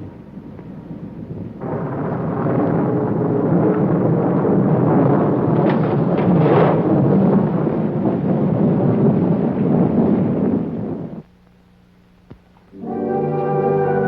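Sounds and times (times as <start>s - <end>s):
sharp thunder cracks: 0.0s - 11.2s
rolling thunder rumble: 0.0s - 11.3s.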